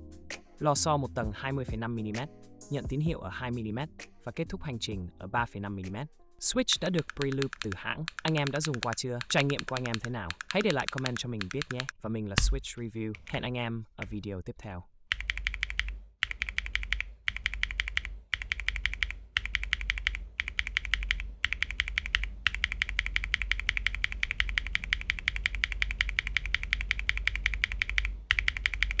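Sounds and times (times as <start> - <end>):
mechanical keyboard typing: 6.8 - 12.0, 15.1 - 29.0.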